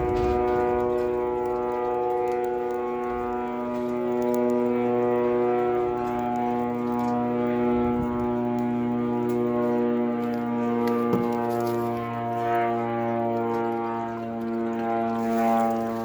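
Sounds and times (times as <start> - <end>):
buzzing drone circling overhead: 0.0 - 16.0.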